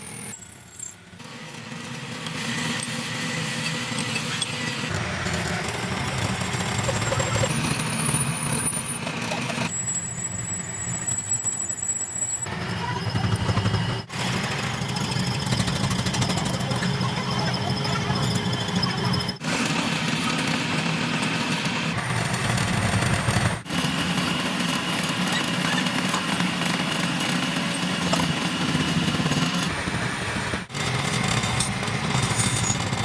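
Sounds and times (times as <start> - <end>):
machinery humming with high whine: 1.0 - 33.0.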